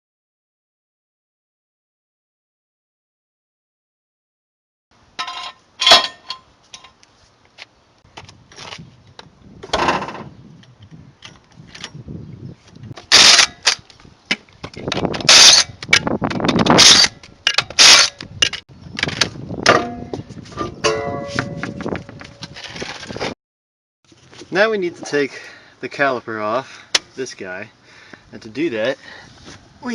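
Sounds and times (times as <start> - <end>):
metallic clanks: 5.2 - 7.0, 19.6 - 22.5.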